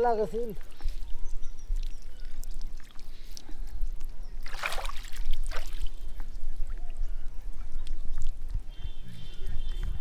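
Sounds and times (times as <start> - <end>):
water splashing and sloshing: 4.4 - 6.3.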